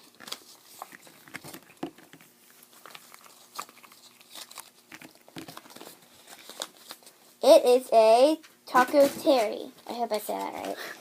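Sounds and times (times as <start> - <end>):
plastic packaging crinkling: 0.0 - 7.2.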